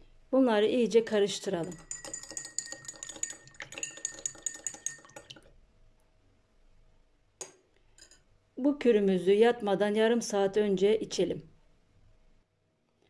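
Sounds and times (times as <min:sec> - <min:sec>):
spoon clinking in a glass: 0:01.6 - 0:05.5.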